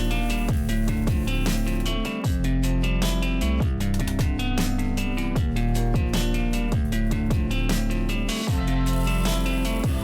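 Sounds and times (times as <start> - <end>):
background music with beat: 0.0 - 10.0.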